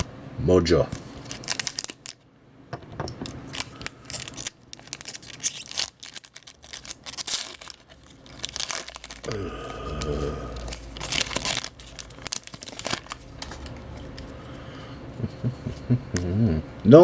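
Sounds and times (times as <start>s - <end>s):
wrapper tearing and crinkling: 1.2s - 2.2s, 3.5s - 13.8s.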